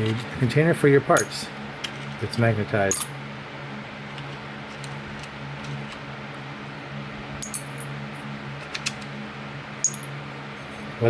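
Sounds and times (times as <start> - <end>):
steady low hum: 0.0 - 11.0
small metal parts clinking: 2.9 - 3.1, 7.4 - 7.9, 9.8 - 10.2.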